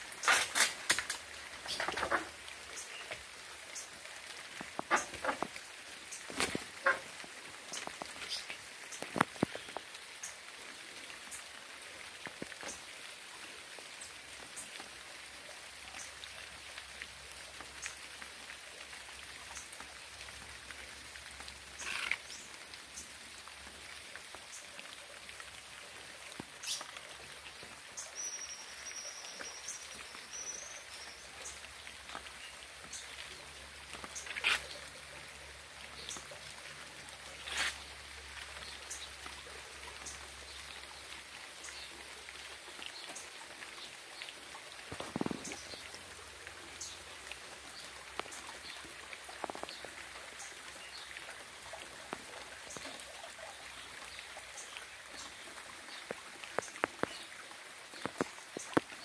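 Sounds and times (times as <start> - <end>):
rain falling steadily: 0.0 - 59.0.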